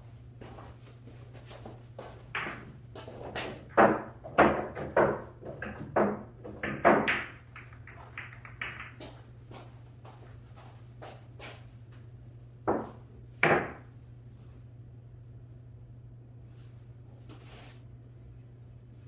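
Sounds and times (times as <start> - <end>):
pool balls clacking: 2.4 - 9.2, 12.7 - 13.8.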